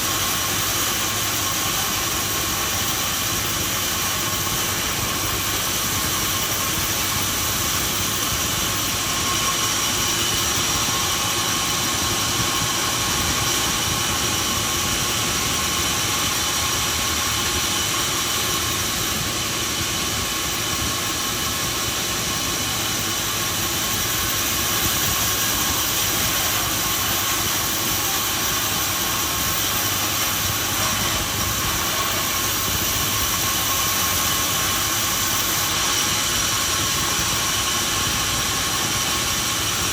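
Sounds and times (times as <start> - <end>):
sawmill machinery high whine: 0.0 - 39.9.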